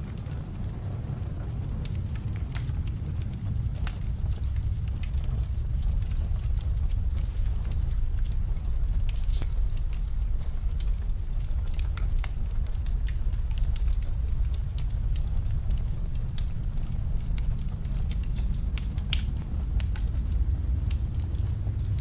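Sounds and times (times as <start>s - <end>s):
storm wind rumble: 0.0s - 22.0s
wood fire crackling and popping: 0.0s - 22.0s.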